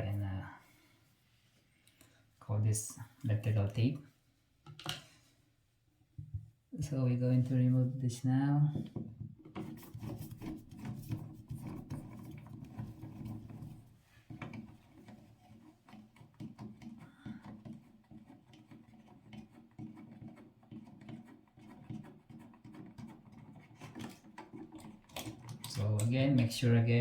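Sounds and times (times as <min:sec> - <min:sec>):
rubbing and scraping: 0:08.8 - 0:26.5.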